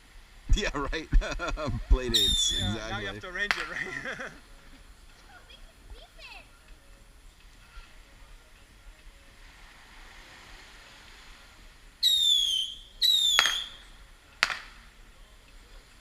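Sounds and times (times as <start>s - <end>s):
whistling fireworks: 2.2s - 2.9s, 12.0s - 14.8s
firework bangs: 12.0s - 13.8s.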